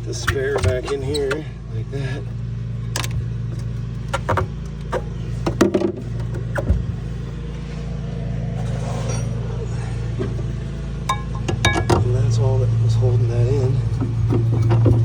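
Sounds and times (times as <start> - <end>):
steady low hum: 0.0 - 15.0
tire and tools knocking: 2.8 - 7.6, 10.1 - 12.4, 13.5 - 15.0.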